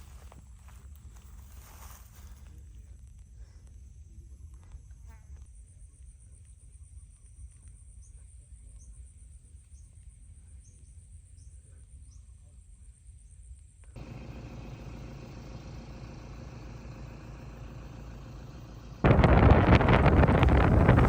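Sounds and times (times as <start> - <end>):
low rumbling background: 14.0 - 21.0.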